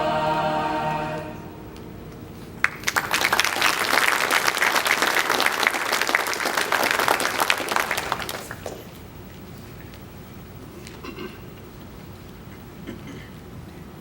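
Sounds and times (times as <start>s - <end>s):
crowd applauding: 2.6s - 8.9s.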